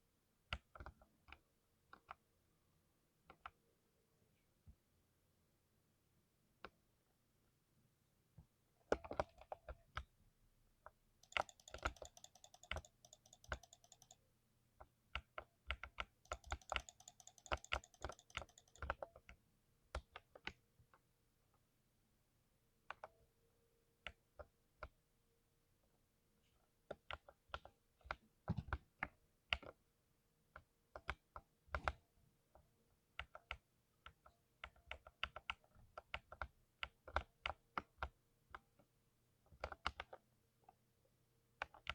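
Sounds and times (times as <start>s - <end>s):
mechanical keyboard typing: 11.2s - 14.2s, 15.2s - 19.2s.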